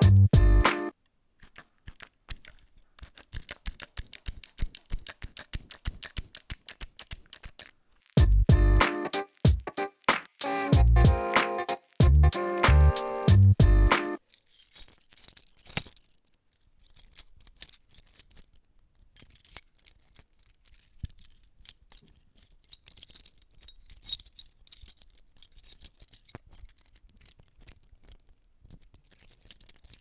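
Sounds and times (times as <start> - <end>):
small metal objects clinking: 14.2 - 30.0.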